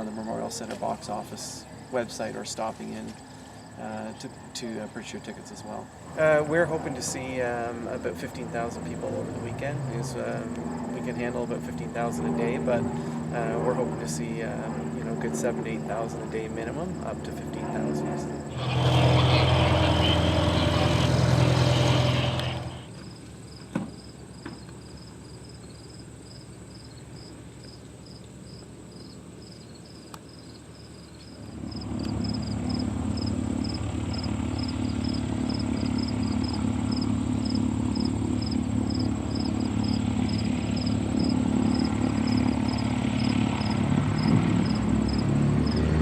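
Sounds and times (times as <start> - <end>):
propeller aircraft engine: 3.1 - 23.1, 31.1 - 46.0.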